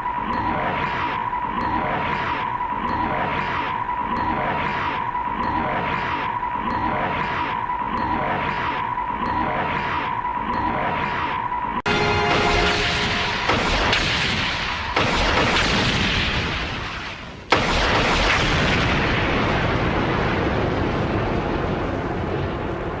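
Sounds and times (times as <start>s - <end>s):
explosion blasts: 11.9s - 23.0s.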